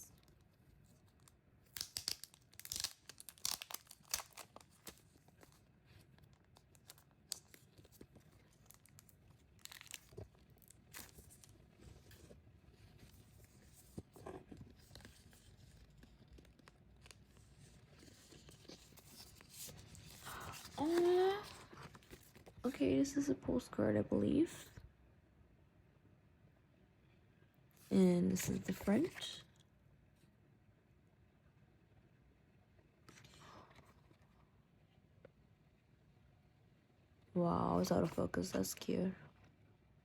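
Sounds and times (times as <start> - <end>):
packaging tearing and crinkling: 1.2 - 11.6.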